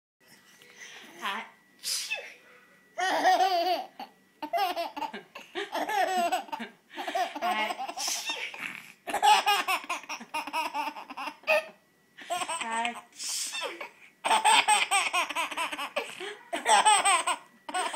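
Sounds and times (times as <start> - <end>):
baby laughing: 3.0 - 13.0, 13.6 - 17.9.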